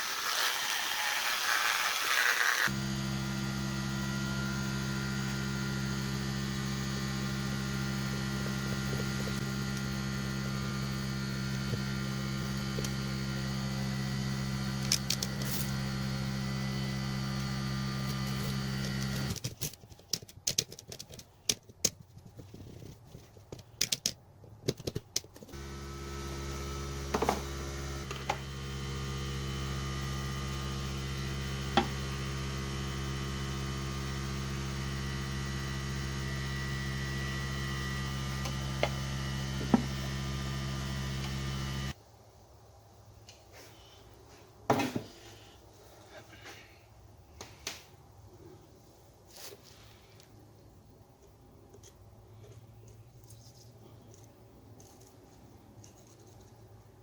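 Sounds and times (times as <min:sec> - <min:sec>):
electrical hum: 0:02.7 - 0:19.6.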